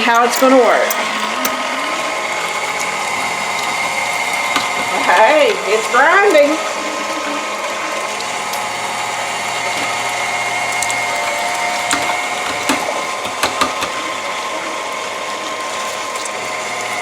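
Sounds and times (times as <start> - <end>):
stand mixer motor whine: 0.0 - 17.0
sharp clicks and knocks: 11.9 - 14.0.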